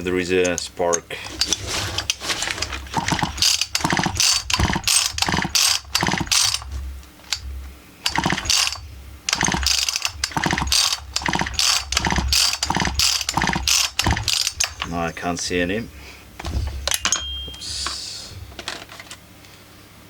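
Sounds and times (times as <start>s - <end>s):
pawls and flywheel ticking: 0.4s - 15.2s
recoil starter cord rattling: 0.5s - 15.0s.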